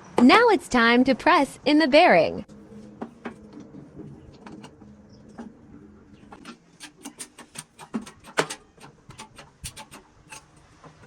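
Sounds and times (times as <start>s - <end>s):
sharp clicks and ticks from tooling: 6.3s - 11.0s.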